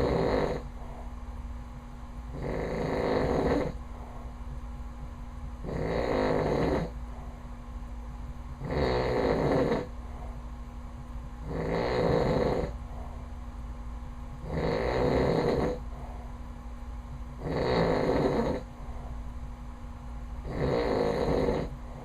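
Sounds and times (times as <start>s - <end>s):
man snoring loudly: 0.0s - 0.7s, 2.4s - 3.8s, 5.6s - 6.9s, 8.6s - 9.9s, 11.5s - 12.8s, 14.5s - 15.8s, 17.4s - 18.7s, 20.5s - 21.7s.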